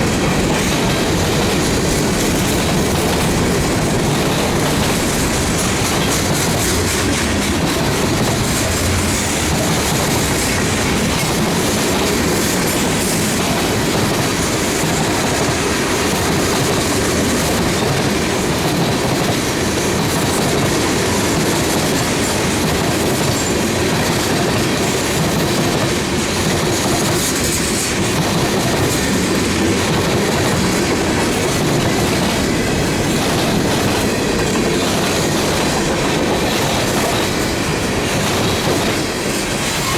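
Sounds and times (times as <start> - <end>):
steel train wheels on rails: 0.0 - 39.9.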